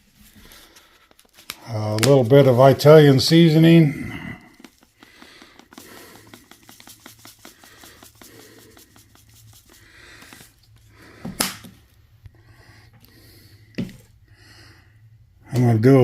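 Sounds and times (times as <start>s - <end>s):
seasoning shaken from container: 4.6s - 10.6s.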